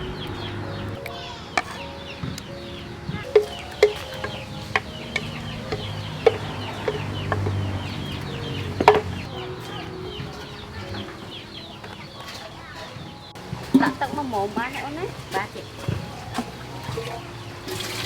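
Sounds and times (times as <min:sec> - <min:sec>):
chicks peeping: 0:00.0 - 0:17.6
chickens clucking: 0:00.0 - 0:18.0
sharp knocks: 0:03.3 - 0:09.3.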